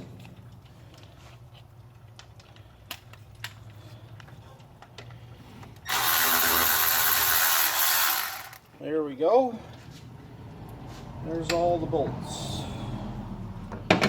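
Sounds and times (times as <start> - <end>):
cordless ratchet motor whir: 5.9 - 8.6.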